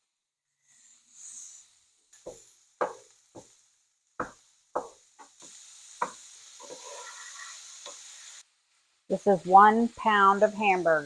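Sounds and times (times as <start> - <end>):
meat sizzling: 0.0 - 11.0
utensil knocking on frying pan: 2.2 - 3.6, 4.2 - 6.3.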